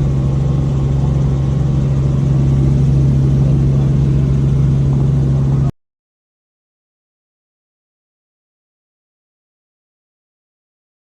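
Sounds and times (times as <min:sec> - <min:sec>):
helicopter engine and rotor drone: 0:00.0 - 0:05.8.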